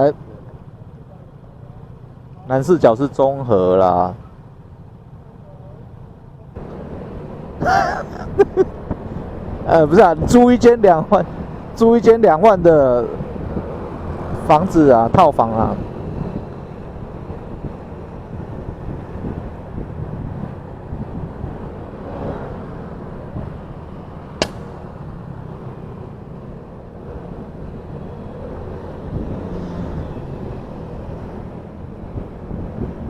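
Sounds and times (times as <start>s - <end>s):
road and engine rumble: 0.0s - 33.0s
wind buffeting microphone: 15.7s - 25.4s, 27.0s - 33.0s
sharp click: 24.4s - 24.8s.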